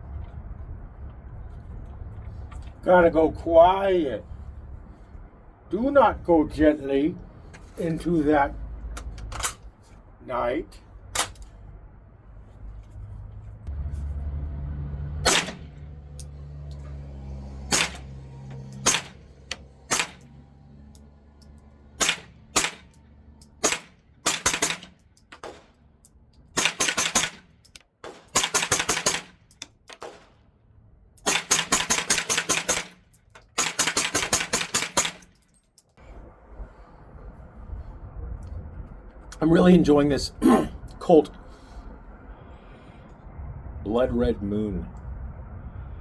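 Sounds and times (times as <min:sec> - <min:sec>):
suppressed gunshots: 0:15.2 - 0:15.8, 0:22.0 - 0:22.9, 0:23.6 - 0:25.8, 0:30.0 - 0:30.4.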